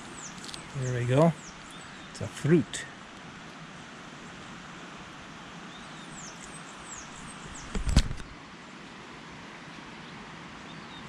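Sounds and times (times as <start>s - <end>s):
bird chirping: 0.0s - 2.8s, 5.7s - 8.3s
river rushing: 0.0s - 11.0s.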